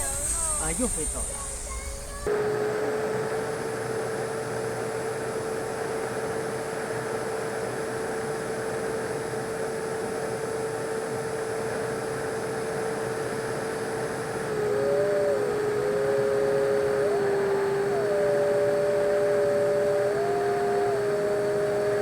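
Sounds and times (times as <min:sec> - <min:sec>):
air noise hiss: 0:00.0 - 0:02.2
electric ducted fan whining: 0:00.0 - 0:22.0
higher whine: 0:00.0 - 0:22.0.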